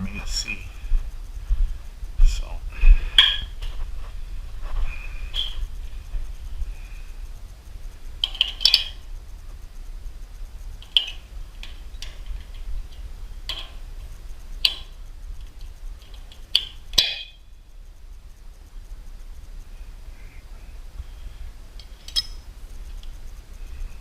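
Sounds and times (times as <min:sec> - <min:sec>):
low steady hum: 0:00.0 - 0:24.0
wrench clinking on metal nuts: 0:08.2 - 0:09.0, 0:10.8 - 0:13.8, 0:21.8 - 0:22.5.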